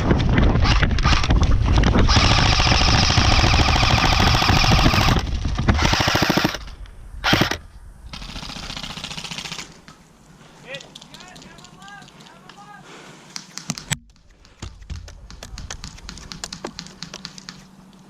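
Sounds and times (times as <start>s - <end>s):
airsoft guns firing bursts: 2.0s - 6.6s, 7.2s - 9.8s.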